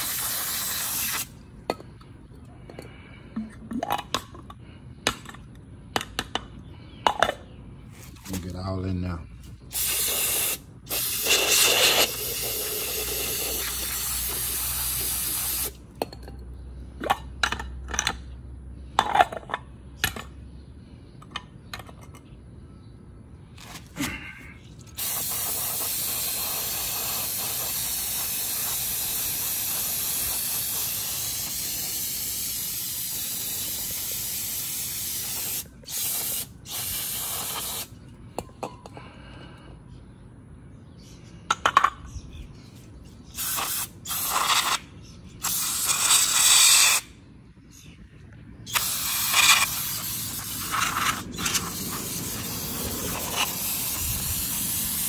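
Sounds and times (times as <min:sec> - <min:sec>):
aerosol can spraying: 0:00.0 - 0:01.3, 0:09.7 - 0:15.8, 0:25.0 - 0:37.9, 0:43.4 - 0:44.8, 0:48.7 - 0:55.0.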